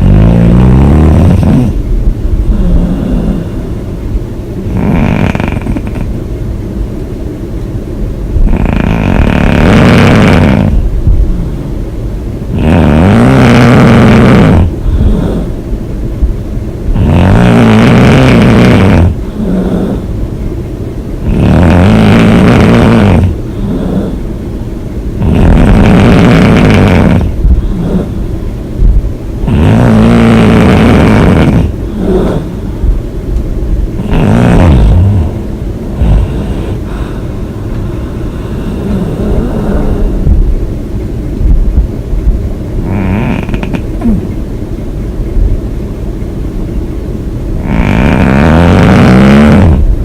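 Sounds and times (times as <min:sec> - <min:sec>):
woman snoring loudly: 0:00.0 - 0:01.8, 0:02.5 - 0:03.7, 0:04.6 - 0:06.2, 0:08.4 - 0:11.5, 0:12.5 - 0:15.6, 0:16.9 - 0:20.1, 0:21.2 - 0:24.3, 0:25.2 - 0:28.3, 0:29.4 - 0:32.6, 0:34.0 - 0:37.2, 0:38.1 - 0:40.2, 0:42.8 - 0:44.2, 0:47.6 - 0:49.9
quiet breathing: 0:01.3 - 0:04.8, 0:14.6 - 0:15.8, 0:19.0 - 0:20.3, 0:23.2 - 0:24.8, 0:26.4 - 0:29.5, 0:31.2 - 0:33.0, 0:34.8 - 0:40.6.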